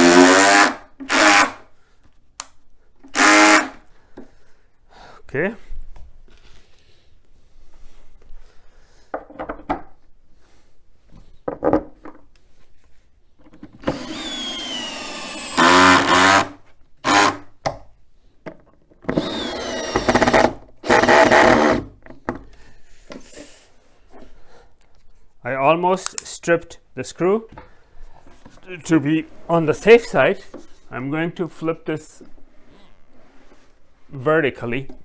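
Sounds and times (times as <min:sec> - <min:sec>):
cordless drill driving screws: 0:00.0 - 0:01.6, 0:03.2 - 0:03.8, 0:13.8 - 0:17.4, 0:19.1 - 0:21.9
man talking: 0:05.3 - 0:05.7, 0:25.4 - 0:27.6, 0:28.6 - 0:32.3, 0:34.1 - 0:35.0.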